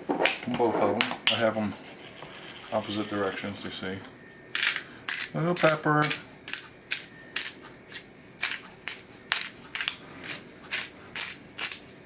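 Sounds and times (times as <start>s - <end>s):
pepper mill grinding: 4.6s - 11.9s.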